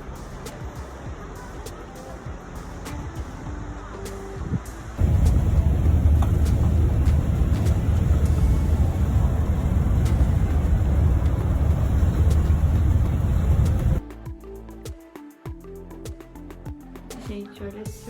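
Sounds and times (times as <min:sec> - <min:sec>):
music: 0:00.0 - 0:18.0
road vehicle rumble: 0:05.0 - 0:14.0.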